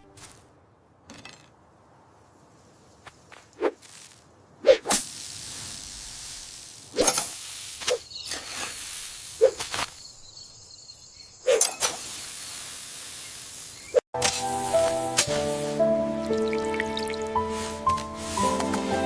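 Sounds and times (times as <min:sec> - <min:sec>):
music: 0:14.2 - 0:19.0.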